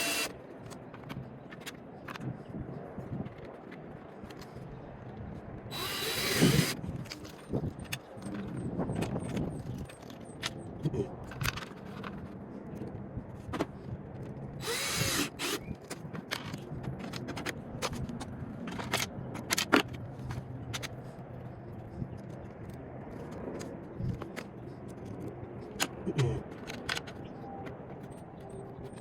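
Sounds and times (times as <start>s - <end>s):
metal parts clicking and rattling: 14.6s - 21.0s.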